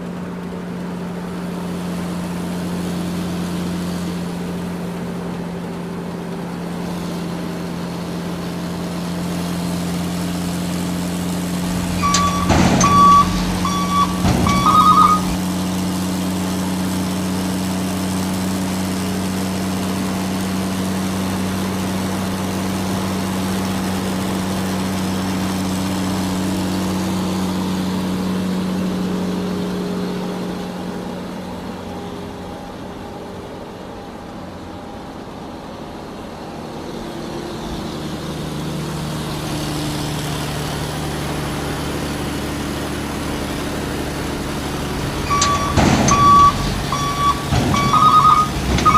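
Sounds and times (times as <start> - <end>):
truck engine running: 0.0 - 48.9
high beeps: 11.9 - 15.4, 45.2 - 48.9.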